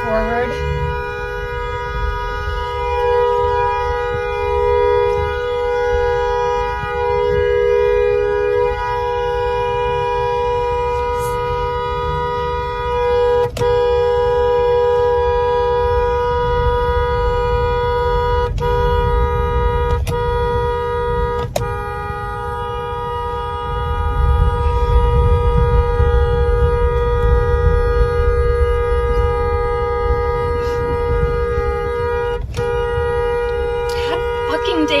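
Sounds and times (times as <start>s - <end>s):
low rumble of moving car: 0.0s - 35.0s
car horn held down: 17.7s - 34.9s.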